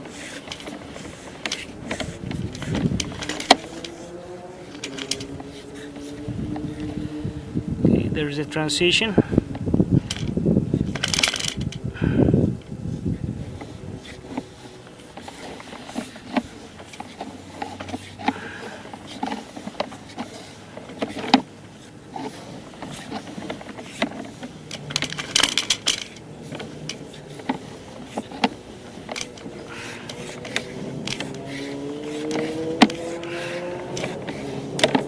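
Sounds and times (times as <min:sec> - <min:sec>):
cable clicking and rattling: 0:00.0 - 0:07.2, 0:09.5 - 0:35.0
steady hum rising in pitch: 0:01.8 - 0:10.8.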